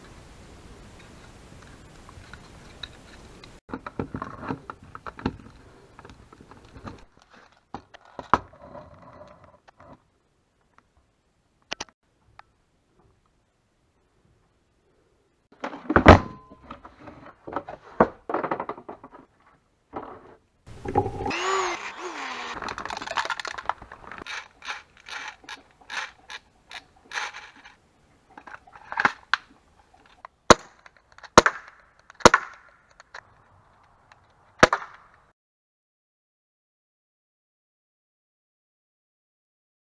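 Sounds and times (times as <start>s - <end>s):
sharp pistol cracks: 30.5s - 33.2s, 34.6s - 35.2s.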